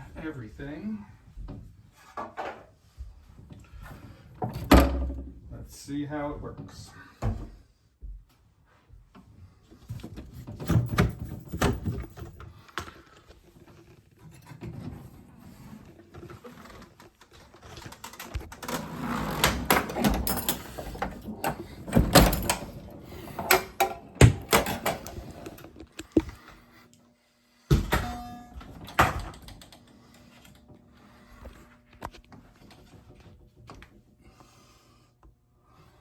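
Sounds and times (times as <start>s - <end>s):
pinball machine rattling: 17.9s - 25.6s
pinball machine knocks and clicks: 27.7s - 29.8s.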